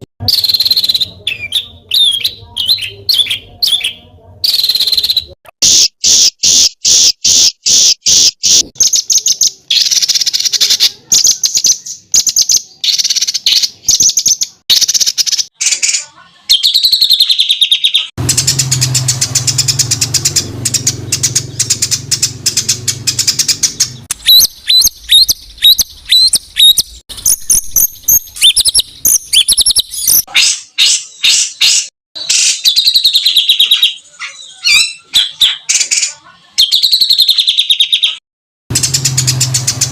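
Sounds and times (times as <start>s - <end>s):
songbird singing fast harsh notes: 0.2s - 39.9s.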